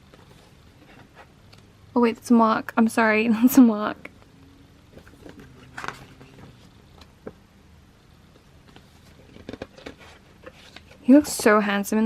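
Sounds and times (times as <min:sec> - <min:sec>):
paper pages rustling: 0:04.9 - 0:07.4, 0:08.6 - 0:11.1.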